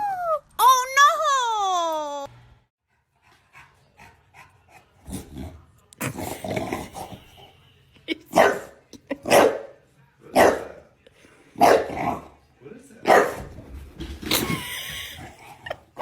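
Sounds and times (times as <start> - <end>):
dog barking: 8.3 - 10.8, 11.6 - 12.2, 13.0 - 13.5.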